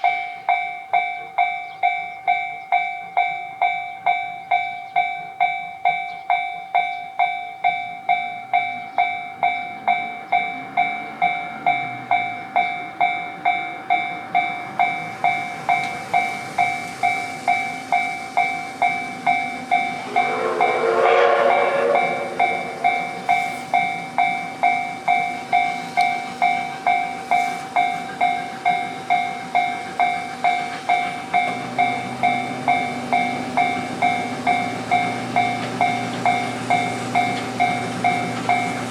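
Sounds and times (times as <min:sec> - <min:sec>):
level crossing bell dinging: 0:00.0 - 0:29.4
low train rumble: 0:07.1 - 0:38.9
train whistle: 0:19.4 - 0:24.2.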